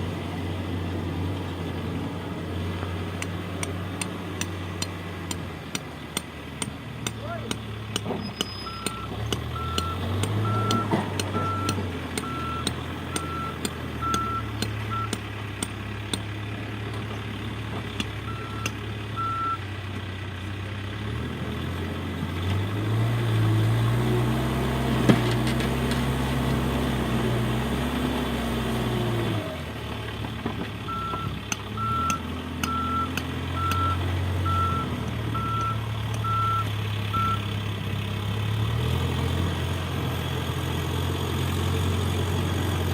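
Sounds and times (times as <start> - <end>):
diesel engine running: 0.0 - 42.9
reversing alarm beeps: 8.3 - 15.2, 18.3 - 19.6, 30.9 - 37.4.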